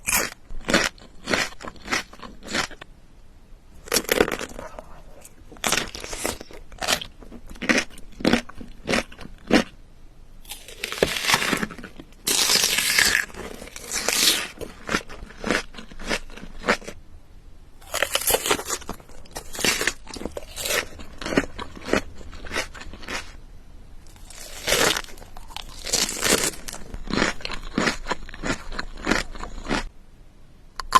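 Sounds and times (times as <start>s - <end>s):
chewing and crunching food: 0.0s - 2.9s, 3.8s - 9.8s, 10.4s - 17.0s, 17.8s - 23.4s, 24.0s - 29.9s.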